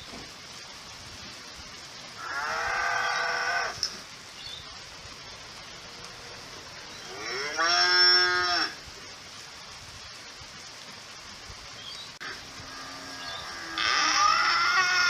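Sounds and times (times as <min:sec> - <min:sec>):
cow mooing: 0:12.7 - 0:15.0.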